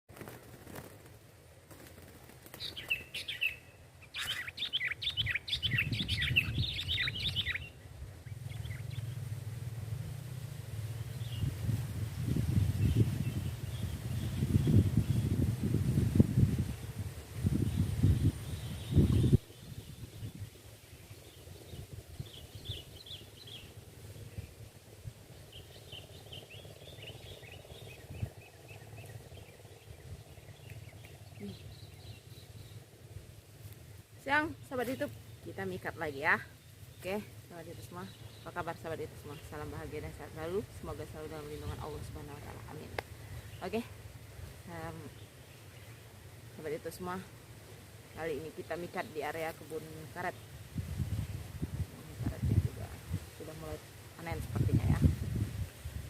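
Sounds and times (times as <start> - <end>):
low outdoor rumble: 0.1 - 56.0
low steady hum: 0.2 - 56.0
bird chirping: 2.6 - 9.6, 10.9 - 11.7, 12.6 - 15.5, 16.7 - 33.4, 34.2 - 50.6.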